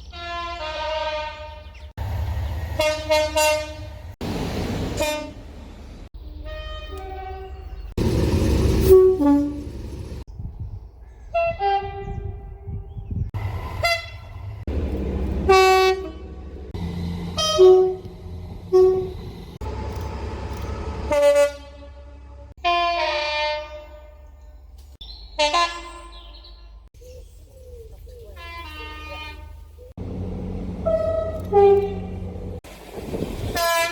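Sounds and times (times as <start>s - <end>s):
train horn blasts: 0.1s - 1.8s, 2.7s - 4.2s, 5.0s - 5.5s, 6.3s - 7.9s, 8.7s - 10.0s, 11.3s - 12.9s, 13.6s - 19.6s, 21.0s - 24.4s, 25.4s - 26.4s, 28.4s - 32.6s, 33.5s - 33.9s
passing train: 0.1s - 25.9s, 27.8s - 33.9s.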